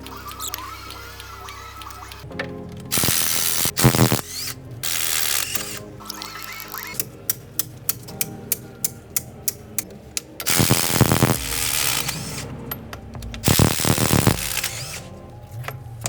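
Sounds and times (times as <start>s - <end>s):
sharp clicks: 0.0s - 15.8s
power tool rattling: 10.4s - 15.2s.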